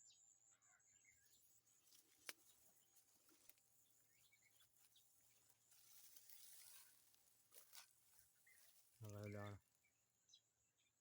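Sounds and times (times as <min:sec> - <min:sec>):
faint bird chirps: 0:00.0 - 0:07.0.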